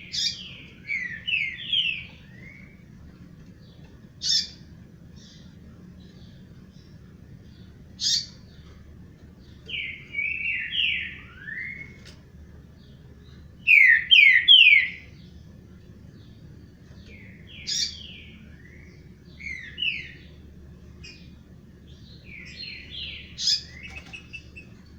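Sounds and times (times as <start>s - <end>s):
songbird singing: 0.0s - 24.9s.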